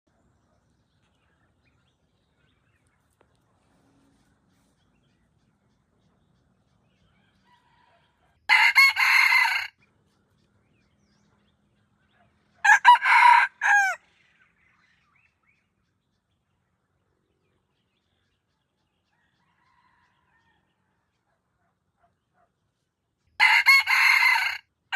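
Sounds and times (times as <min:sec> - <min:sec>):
rooster crowing: 0:07.3 - 0:09.8, 0:12.6 - 0:14.0, 0:23.4 - 0:24.7.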